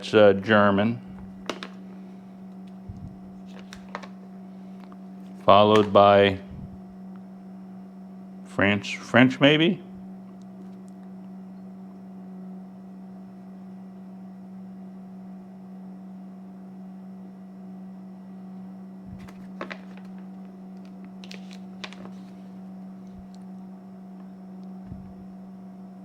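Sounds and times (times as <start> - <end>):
low electrical hum: 0.0 - 26.0
paper rustling and tapping: 1.4 - 2.8, 3.4 - 6.0, 19.2 - 23.4.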